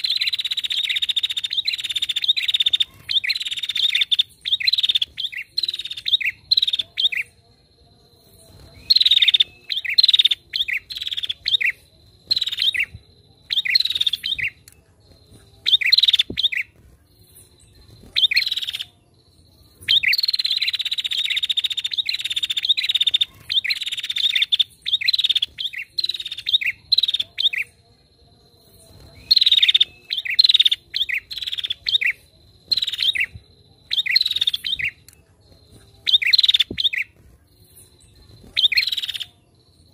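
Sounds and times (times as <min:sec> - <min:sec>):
bird rapid high chirps: 0:00.0 - 0:07.5, 0:08.1 - 0:27.9, 0:28.5 - 0:39.9.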